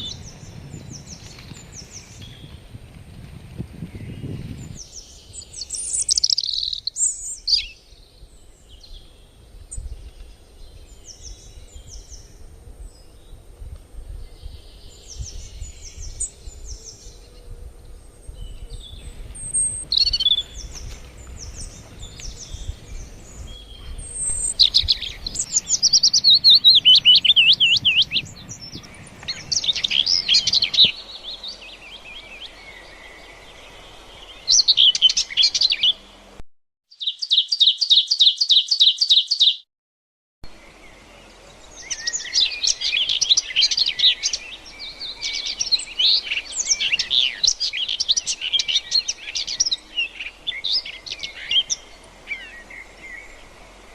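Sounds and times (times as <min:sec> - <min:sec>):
birds chirping: 0:00.0 - 0:13.4, 0:14.2 - 0:39.6, 0:40.5 - 0:53.9
fast warbling bird trill: 0:23.5 - 0:30.9.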